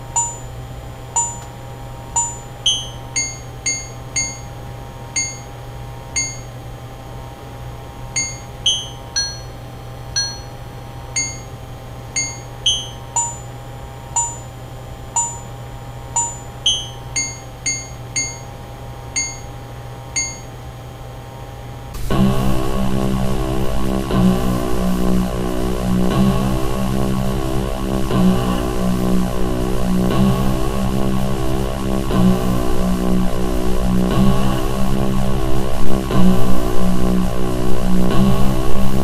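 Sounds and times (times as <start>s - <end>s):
low hum and drone: 0.0s - 6.8s, 8.1s - 18.5s, 21.8s - 39.0s
chime-like electronic notes: 0.2s - 0.5s, 2.2s - 4.5s, 6.2s - 6.6s, 8.2s - 9.6s, 10.2s - 10.6s, 11.2s - 11.6s, 12.2s - 13.5s, 16.2s - 18.5s
rhythmic synth track: 22.0s - 39.0s.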